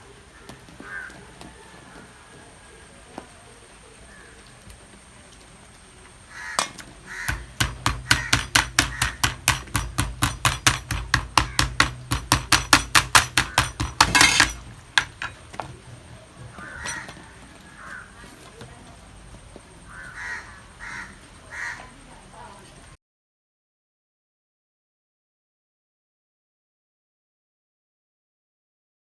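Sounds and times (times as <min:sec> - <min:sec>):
crows cawing: 0:00.3 - 0:02.2, 0:04.0 - 0:04.5, 0:06.3 - 0:10.3, 0:11.1 - 0:12.0, 0:16.3 - 0:18.6, 0:19.8 - 0:22.1
rapid sharp taps: 0:06.6 - 0:15.4.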